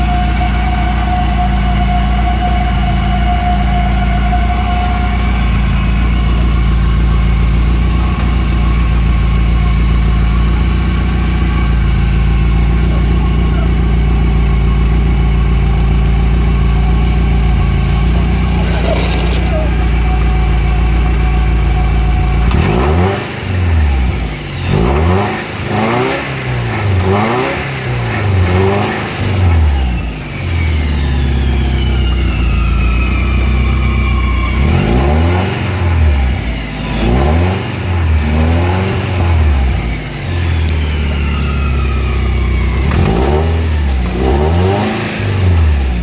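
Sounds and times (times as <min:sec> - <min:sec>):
car engine revving: 0:00.0 - 0:46.0
gear whine: 0:00.0 - 0:46.0.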